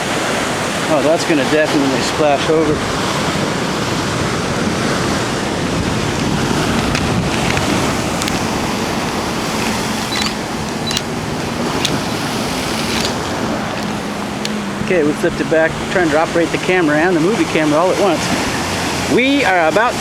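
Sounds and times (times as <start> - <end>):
ocean surf breaking on rocks: 0.0 - 20.0
wind on microphone: 0.0 - 20.0
sharp clicks: 6.8 - 14.6.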